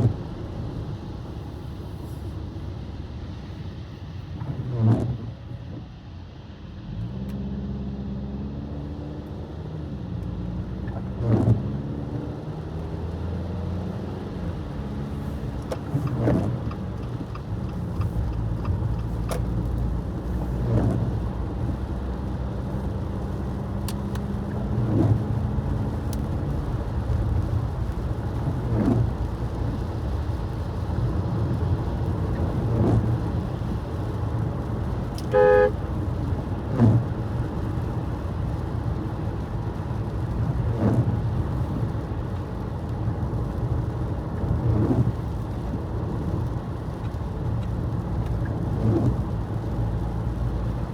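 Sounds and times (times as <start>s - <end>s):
car driving on wet road: 0.0s - 50.9s
windshield wipers sweeping: 10.7s - 11.7s, 12.7s - 50.9s
car horn toot: 35.2s - 35.8s.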